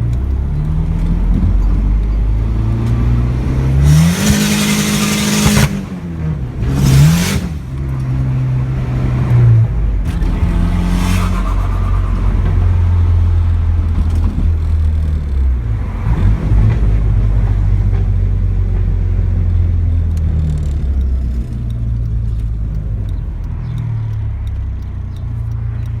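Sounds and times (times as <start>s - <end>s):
car engine revving: 0.0s - 26.0s
tires spinning in a burnout: 2.7s - 9.4s, 10.0s - 17.9s.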